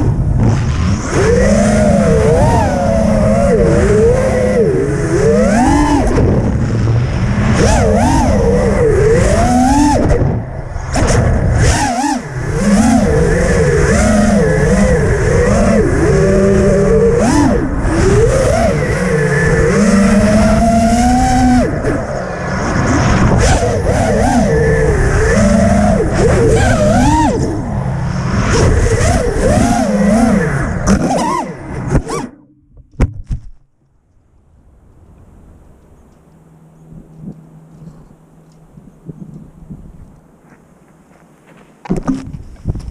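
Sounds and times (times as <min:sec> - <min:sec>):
wind rumble on microphone: 0:00.0 - 0:32.2, 0:34.7 - 0:40.4, 0:41.9 - 0:42.9
rushing noise: 0:00.0 - 0:32.3
quadcopter motors whining: 0:00.0 - 0:32.5, 0:35.0 - 0:40.3.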